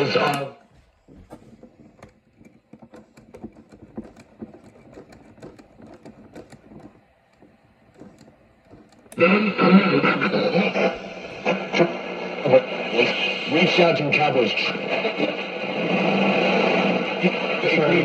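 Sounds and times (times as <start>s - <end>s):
radio station broadcast: 0.0s - 2.0s, 9.1s - 18.0s
faint crackling radio static: 0.0s - 3.8s, 6.4s - 18.0s.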